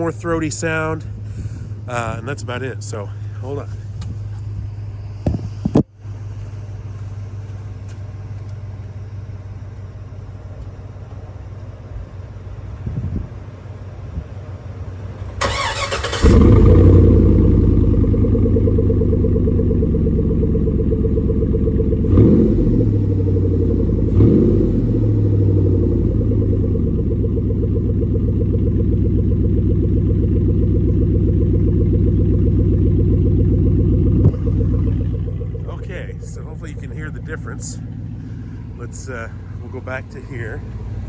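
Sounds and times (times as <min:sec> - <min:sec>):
car engine idling: 0:00.0 - 0:41.0
engine throttle blips: 0:00.0 - 0:41.0
starter motor whirring: 0:15.3 - 0:19.4.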